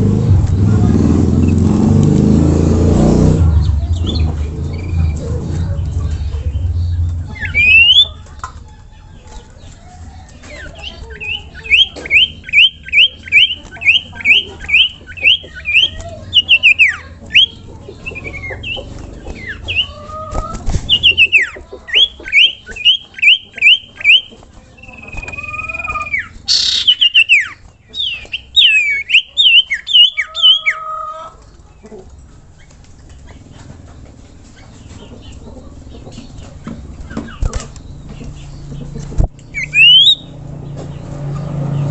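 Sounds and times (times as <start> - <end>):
bird singing whistled notes: 3.9 - 5.2, 6.8 - 8.2, 10.5 - 20.0, 20.9 - 30.8, 39.5 - 40.4.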